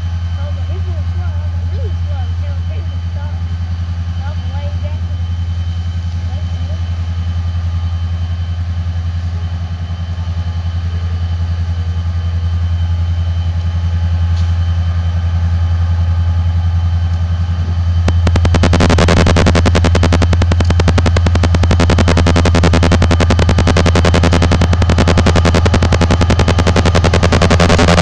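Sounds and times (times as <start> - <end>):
diesel locomotive engine throbbing: 0.0 - 28.0.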